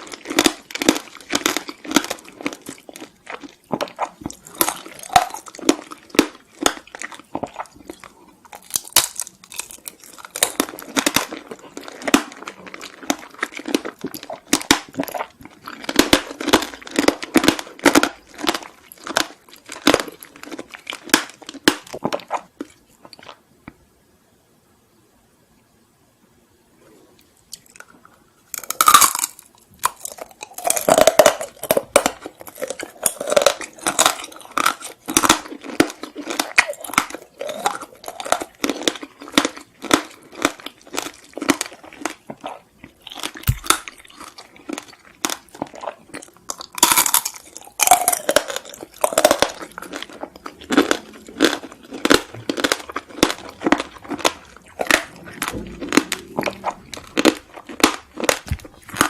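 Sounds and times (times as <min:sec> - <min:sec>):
crunching and chewing sweets: 0:00.0 - 0:23.9, 0:26.8 - 0:59.0
loud bite: 0:43.1 - 0:44.4.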